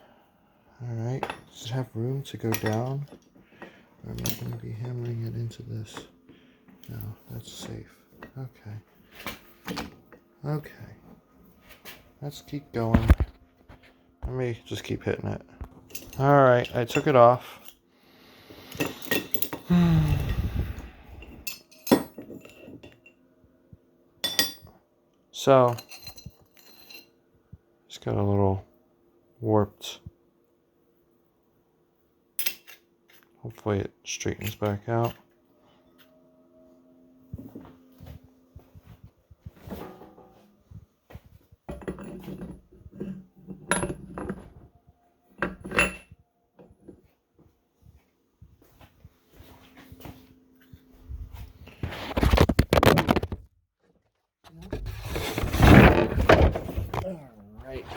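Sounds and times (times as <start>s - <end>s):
metal parts clattering and clinking: 4.1s - 5.2s, 18.7s - 20.3s, 55.0s - 57.0s
metal parts clinking: 4.1s - 5.2s.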